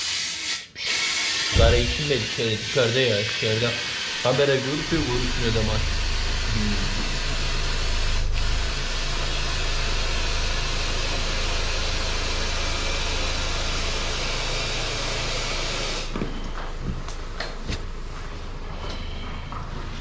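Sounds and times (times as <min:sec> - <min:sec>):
compressed air hissing: 0:00.0 - 0:16.2
low hum: 0:01.6 - 0:02.3, 0:04.5 - 0:15.5.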